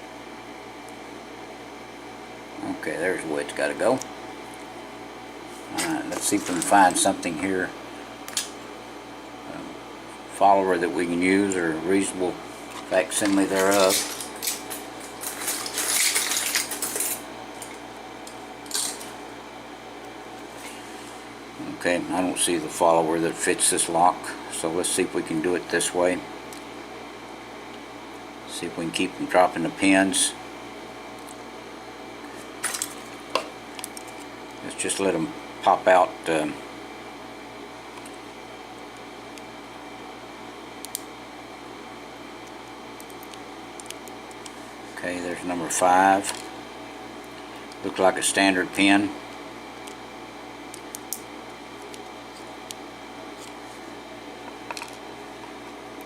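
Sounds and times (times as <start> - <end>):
steady background hum: 0.0 - 56.0
small metal parts clinking: 13.2 - 17.2, 18.7 - 19.1.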